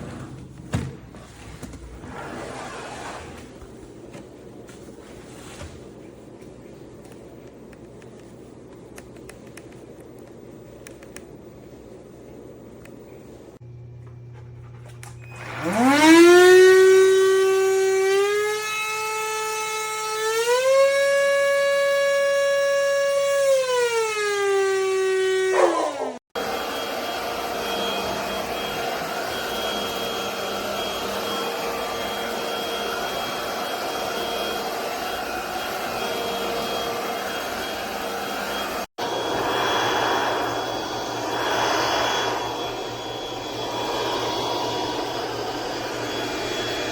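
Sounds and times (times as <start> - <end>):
vacuum motor whining: 15.0 - 19.8, 21.2 - 46.9
rushing airflow: 26.6 - 46.9.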